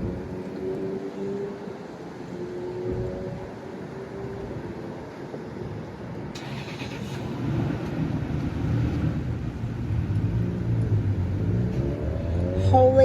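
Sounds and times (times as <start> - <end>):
vehicle engine rumbling: 2.9 - 13.0.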